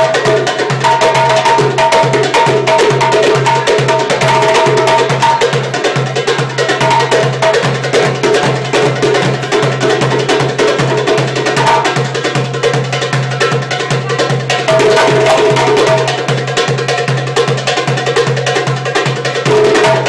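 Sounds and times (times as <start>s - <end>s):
fast percussion drum rhythm: 0.0s - 20.0s.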